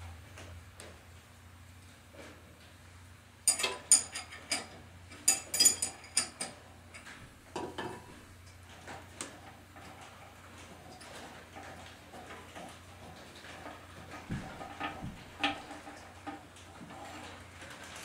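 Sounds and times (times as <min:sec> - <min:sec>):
metal bolts and tools clinking: 0:03.5 - 0:08.2.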